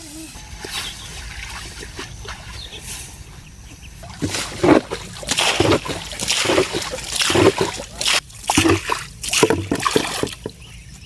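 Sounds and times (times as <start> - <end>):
water splashing and sloshing: 0.4 - 11.0.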